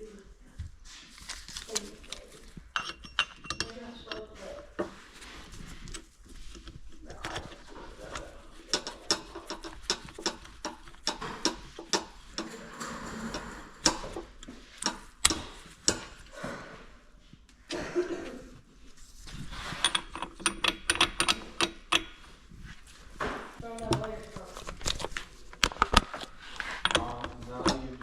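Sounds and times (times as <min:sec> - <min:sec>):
hand tools clicking and knocking: 0:01.7 - 0:05.0, 0:05.9 - 0:16.3, 0:19.8 - 0:22.4, 0:23.5 - 0:28.0
scraping: 0:03.7 - 0:15.6, 0:22.2 - 0:28.0.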